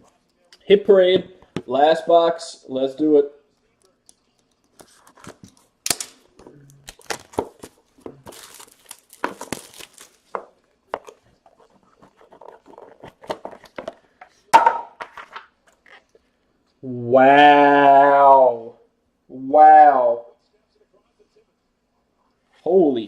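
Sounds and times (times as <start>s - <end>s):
cardboard and plastic tearing: 6.8s - 10.4s.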